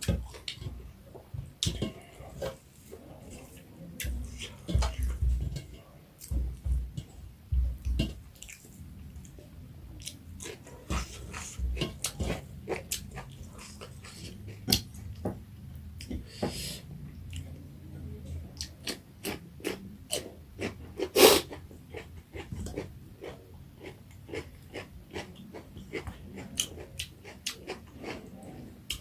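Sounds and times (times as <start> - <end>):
person chewing food: 7.8 - 17.6, 18.6 - 29.0.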